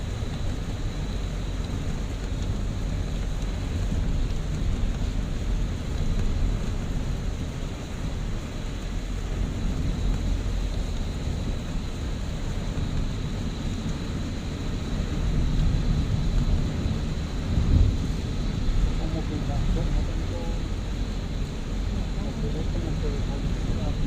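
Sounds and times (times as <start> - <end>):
car driving on highway: 0.0 - 24.0.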